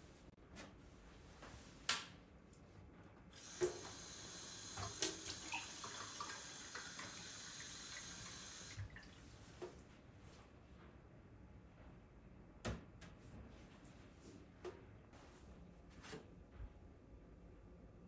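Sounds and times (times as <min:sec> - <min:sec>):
water running into sink: 0:03.4 - 0:09.2.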